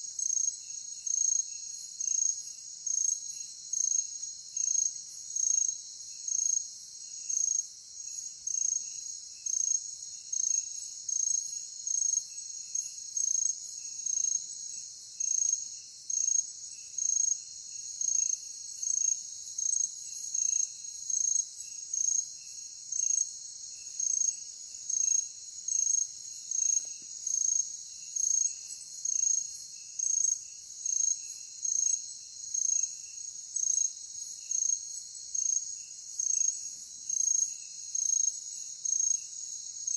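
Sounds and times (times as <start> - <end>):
faint pulsing insect calls: 0.0 - 39.9
loud insect chirp: 0.0 - 39.9
insects trilling: 8.2 - 39.9.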